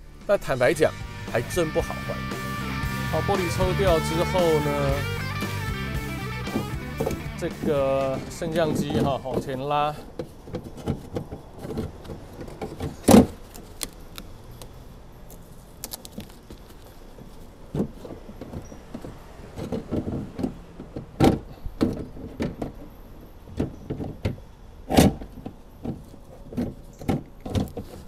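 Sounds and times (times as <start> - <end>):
metal and plastic parts clunking: 6.5 - 14.8, 15.8 - 28.0.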